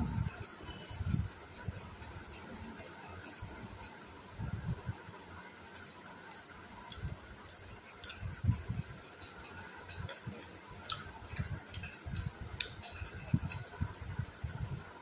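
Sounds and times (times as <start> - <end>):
sharp mouth clicks: 5.7 - 8.7, 10.0 - 13.0
close-up chewing: 5.7 - 13.7.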